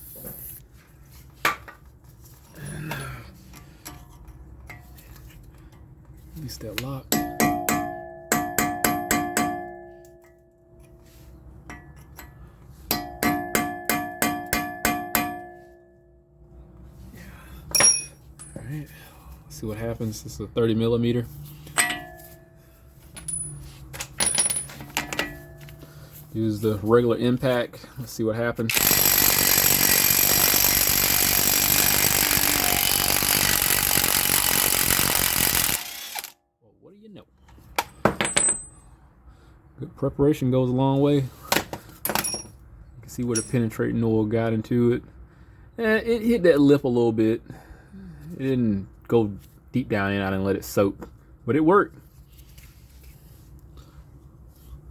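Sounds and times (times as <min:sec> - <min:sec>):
impact wrench hammering: 0:07.1 - 0:10.1, 0:12.9 - 0:15.8, 0:17.7 - 0:18.6, 0:21.7 - 0:22.5, 0:28.7 - 0:36.4
hammer striking metal punch: 0:07.1 - 0:10.3, 0:12.9 - 0:15.8, 0:17.7 - 0:18.6, 0:21.7 - 0:22.5.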